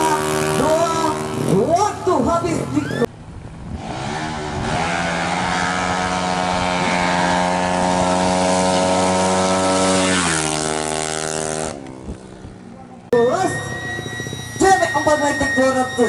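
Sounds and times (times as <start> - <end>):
scooter engine revving at full throttle: 0.0 - 1.8, 3.7 - 12.6.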